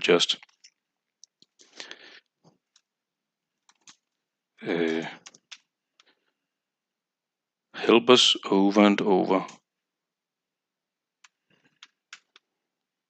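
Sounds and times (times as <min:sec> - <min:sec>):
person breathing: 0:01.6 - 0:02.4
computer keyboard keys clicking: 0:03.6 - 0:04.2, 0:05.0 - 0:06.1, 0:11.2 - 0:12.5.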